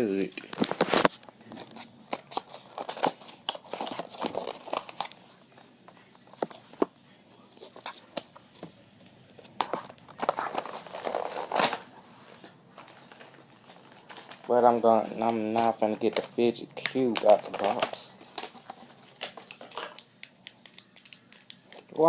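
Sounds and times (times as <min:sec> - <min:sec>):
packaging rustling and crinkling: 0:00.4 - 0:06.8, 0:09.5 - 0:20.0.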